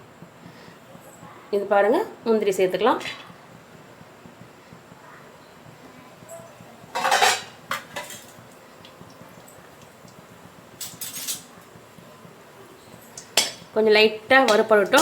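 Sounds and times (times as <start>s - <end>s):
metal spoon scraping a pan: 6.9s - 8.3s, 10.8s - 11.5s.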